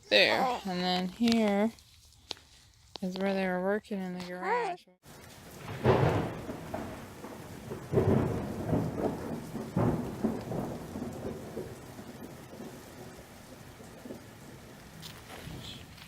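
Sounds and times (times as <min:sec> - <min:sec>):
steady rain: 0:05.0 - 0:16.0
thunder: 0:05.5 - 0:15.9.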